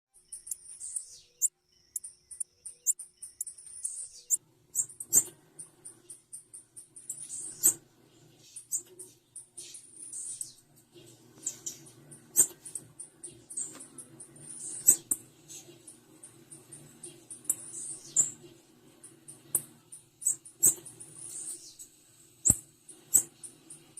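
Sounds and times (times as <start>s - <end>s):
sharp clicks: 22.4s - 23.5s.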